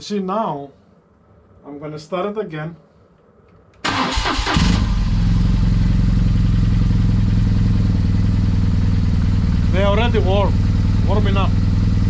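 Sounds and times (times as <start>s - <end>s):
starter motor cranking: 3.9s - 5.1s
motorcycle engine idling: 5.1s - 12.0s.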